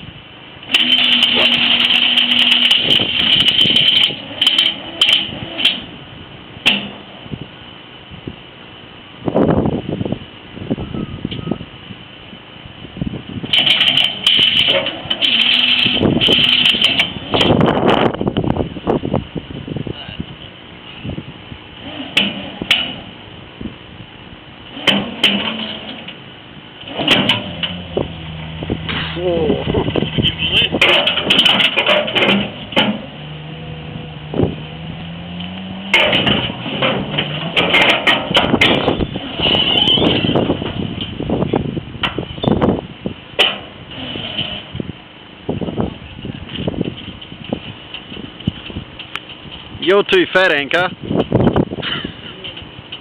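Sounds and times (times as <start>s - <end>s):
steady low hum: 0.0s - 39.4s
loud rattling and clattering: 0.7s - 5.9s, 13.5s - 17.8s, 24.8s - 26.2s, 26.8s - 33.2s, 35.9s - 41.2s.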